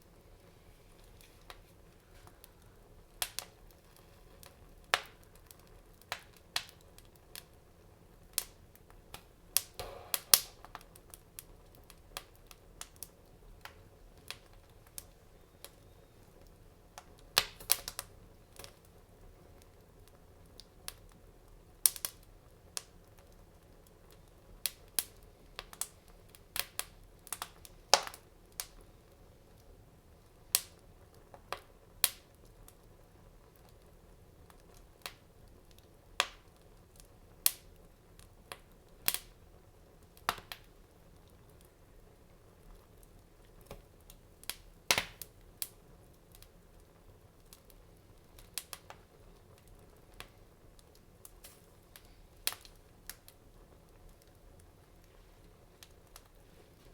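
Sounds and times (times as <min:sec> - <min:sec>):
wood fire crackling and popping: 0:00.0 - 0:56.9.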